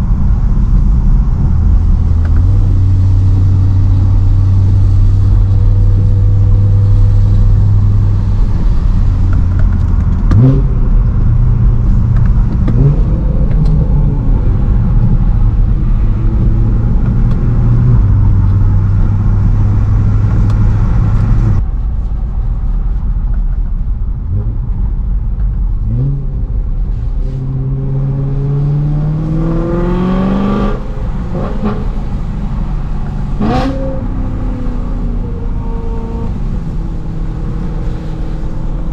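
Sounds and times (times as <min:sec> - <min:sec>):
car engine revving: 0:00.0 - 0:21.6, 0:25.7 - 0:38.9
tyre and road noise hiss: 0:29.7 - 0:38.9.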